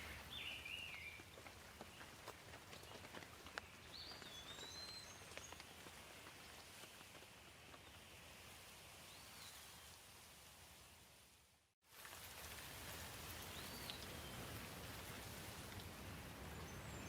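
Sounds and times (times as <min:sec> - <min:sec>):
soft rain hiss: 0:00.0 - 0:17.0
water drips: 0:11.9 - 0:16.6.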